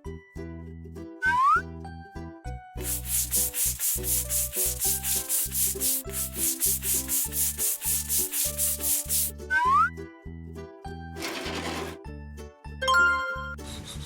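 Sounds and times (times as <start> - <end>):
children's music with bass line: 2.8 - 11.0, 11.6 - 13.8.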